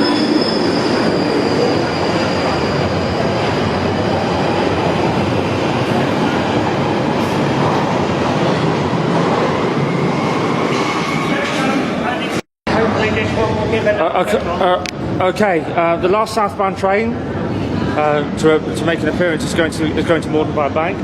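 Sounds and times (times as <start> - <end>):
high wheel squeal: 0.0 - 4.2.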